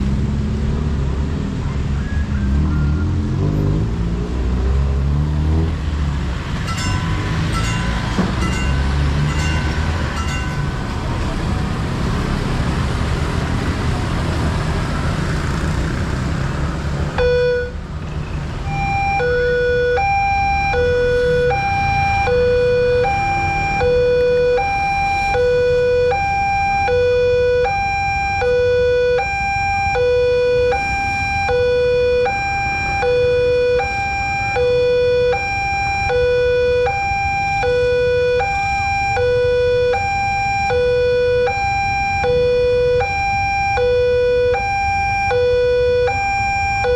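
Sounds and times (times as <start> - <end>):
level crossing two-tone siren: 17.1 - 17.8, 18.7 - 46.9.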